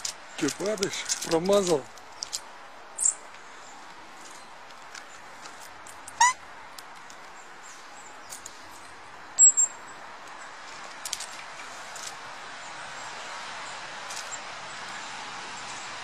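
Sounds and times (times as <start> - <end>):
small birds chirping: 3.0 - 10.6.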